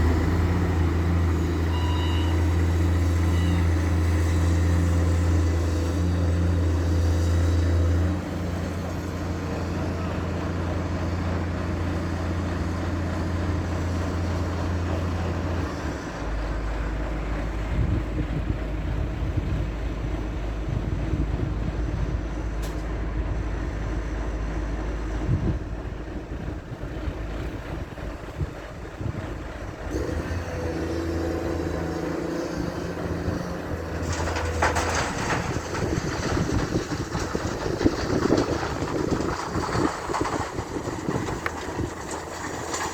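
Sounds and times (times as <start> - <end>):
diesel machinery engine hum: 0.0 - 42.9
clunks: 30.0 - 42.9.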